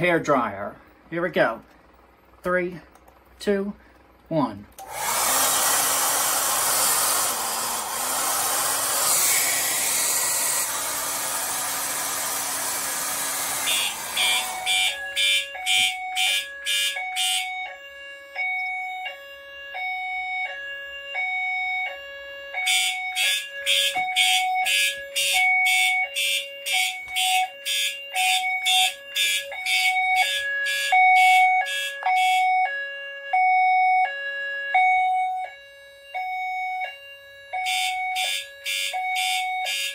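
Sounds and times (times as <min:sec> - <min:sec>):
hair dryer blowing: 0:04.8 - 0:15.0
rapid alarm pulsing: 0:04.8 - 0:39.9
two-tone fire alarm signal: 0:05.8 - 0:39.9.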